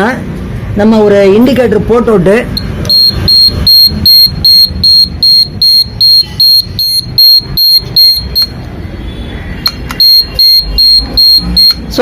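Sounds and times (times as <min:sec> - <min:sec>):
motorcycle indicator buzzer beeping: 0:02.6 - 0:08.6, 0:09.6 - 0:12.0.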